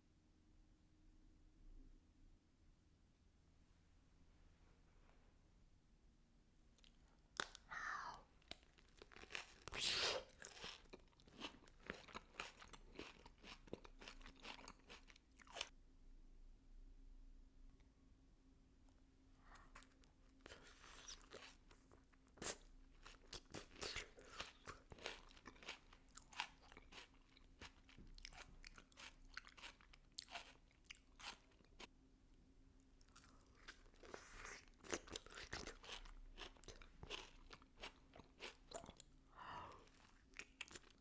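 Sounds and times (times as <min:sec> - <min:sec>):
biting and chewing plum: 0:33.2 - 0:39.0.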